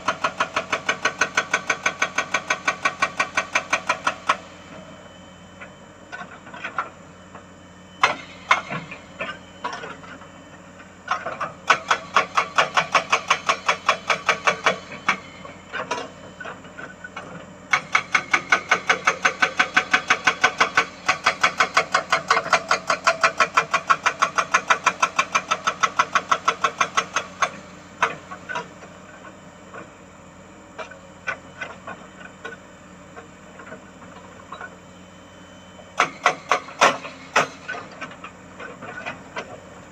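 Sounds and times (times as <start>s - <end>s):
hydraulic breaker hammering on rock: 11.6s - 15.2s, 17.7s - 28.7s, 36.0s - 37.7s.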